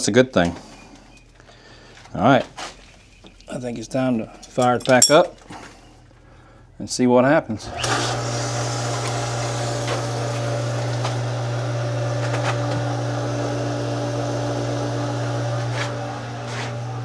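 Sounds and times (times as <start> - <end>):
well pump motor humming: 7.5 - 17.0.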